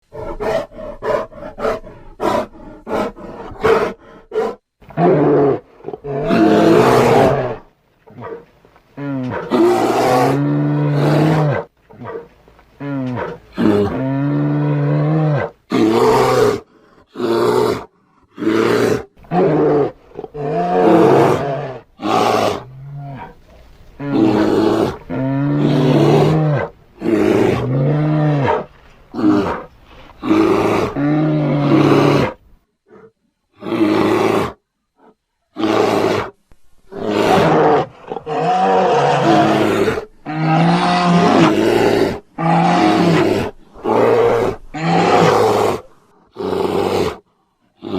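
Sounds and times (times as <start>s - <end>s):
bear roars and growls: 0.0s - 47.9s.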